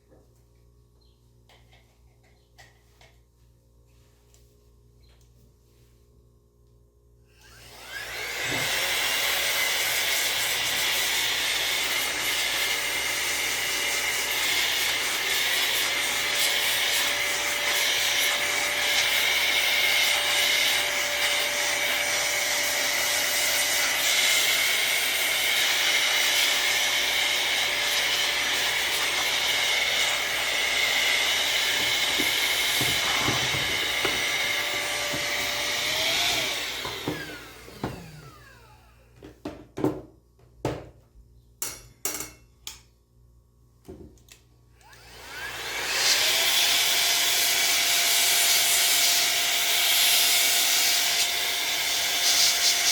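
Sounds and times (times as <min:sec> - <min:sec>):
air blower rushing: 0:07.4 - 0:39.2
motor whine: 0:15.8 - 0:39.1.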